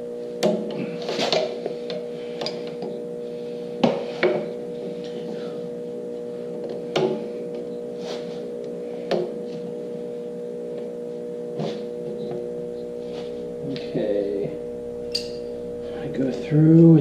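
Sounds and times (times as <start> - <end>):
steady hum: 0.0 - 17.0
soft scuffing: 8.0 - 8.5, 13.0 - 13.5.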